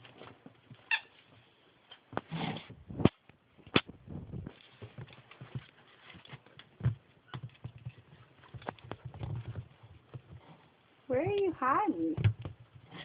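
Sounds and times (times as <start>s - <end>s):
ferret scrabbling and scuffling: 4.0s - 10.7s.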